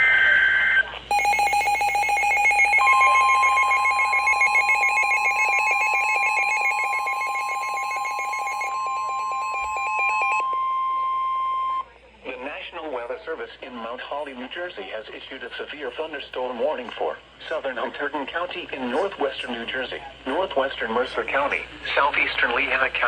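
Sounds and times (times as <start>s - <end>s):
digital data warble: 0.0s - 10.4s
pulsing electronic alarm tone: 0.0s - 11.8s
steady warning tone: 0.0s - 11.9s.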